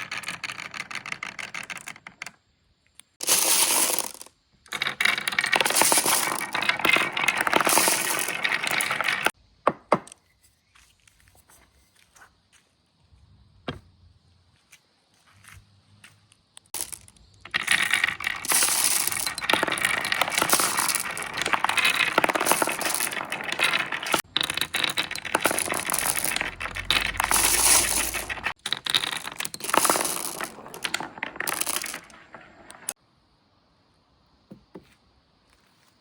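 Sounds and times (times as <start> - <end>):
marbles rattling down a marble run: 0.0 - 2.4, 3.2 - 9.4, 16.7 - 33.0.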